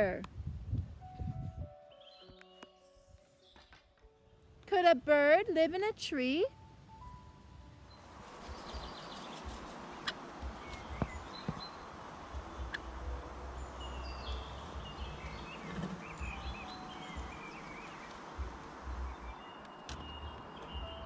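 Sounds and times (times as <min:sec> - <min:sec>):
background hiss: 0:00.0 - 0:21.0
small birds chirping: 0:07.8 - 0:21.0
sharp clicks: 0:19.6 - 0:20.8.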